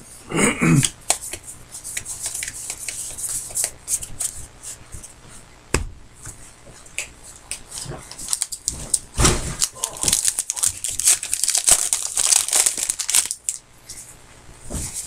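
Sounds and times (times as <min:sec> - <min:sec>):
cards being flipped by hand: 0:01.1 - 0:04.4.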